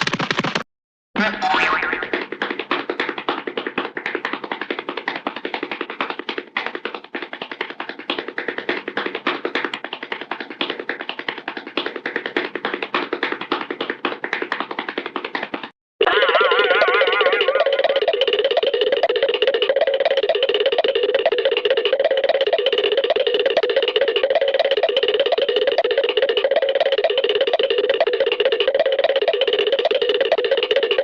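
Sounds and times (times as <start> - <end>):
cartoon running feet tapping: 0.0 - 0.6, 1.2 - 31.0
cartoon boing: 1.2 - 2.2, 16.0 - 18.3
wobbling boing: 1.2 - 2.2, 16.0 - 18.3.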